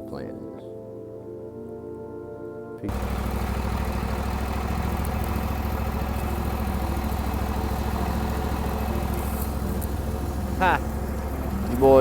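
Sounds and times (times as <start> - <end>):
mower engine running: 2.9 - 12.0.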